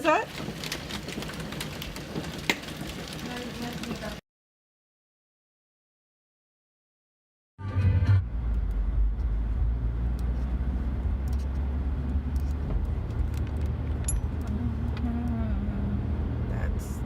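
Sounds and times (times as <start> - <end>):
road and engine rumble in car: 8.2 - 17.0.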